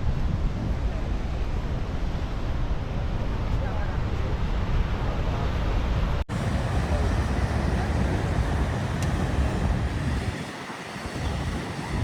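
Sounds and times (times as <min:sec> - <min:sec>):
wind on microphone: 0:00.0 - 0:12.0
roar of rushing water and falls: 0:06.3 - 0:12.0.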